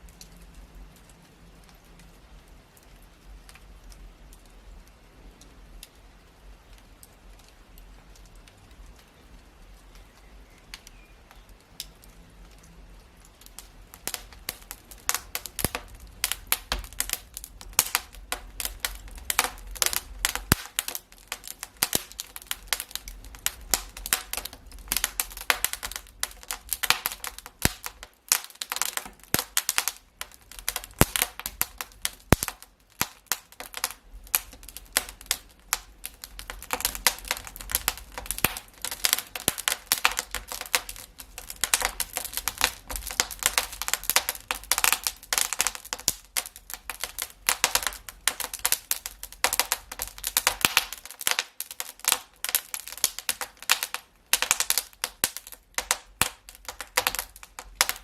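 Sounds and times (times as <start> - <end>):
wood fire crackling: 0.0 - 58.0.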